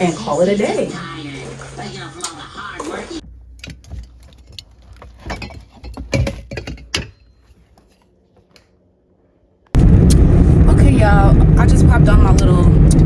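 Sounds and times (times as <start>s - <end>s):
objects clicking and knocking: 3.5s - 7.9s.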